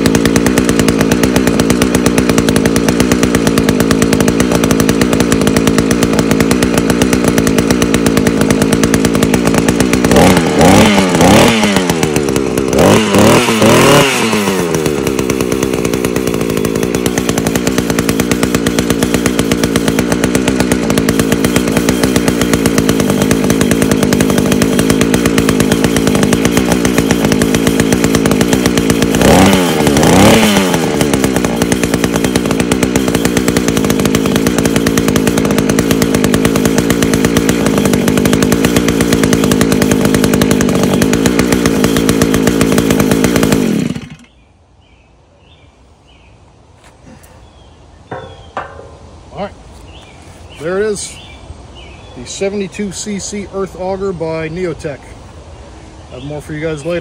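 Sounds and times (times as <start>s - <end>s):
engine revving: 0.0s - 44.4s
small two-stroke engine idling: 0.0s - 46.3s, 46.9s - 57.0s.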